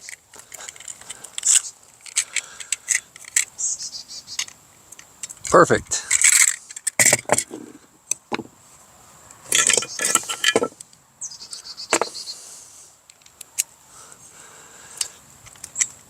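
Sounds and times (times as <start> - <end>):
metal parts clinking: 0.0 - 3.5, 4.4 - 7.7, 9.5 - 10.8.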